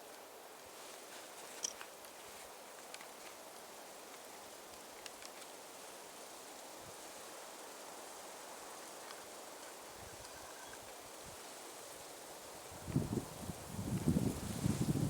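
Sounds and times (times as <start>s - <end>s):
light wind: 0.0s - 15.0s
rustling brush: 0.7s - 3.4s.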